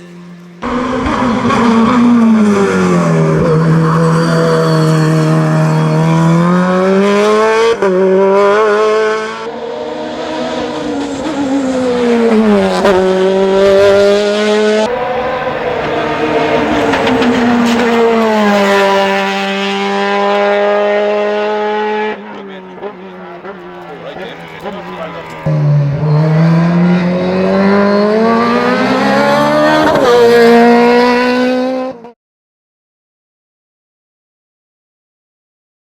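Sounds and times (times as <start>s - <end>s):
racing car engine at high revs: 0.0s - 32.2s.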